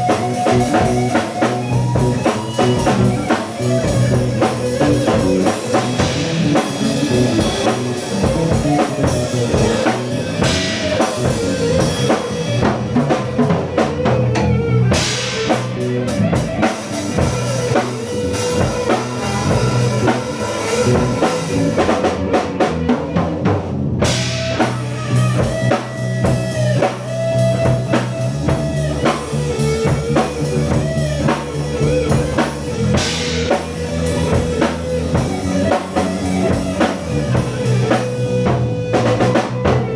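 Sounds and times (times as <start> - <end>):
cymbals: 0.0 - 13.7, 14.9 - 22.1
bass drum: 0.0 - 39.9
bass guitar: 0.0 - 39.9
drum rimshots: 0.0 - 39.9
electric guitar: 0.0 - 39.9
rock band playing: 0.0 - 39.9.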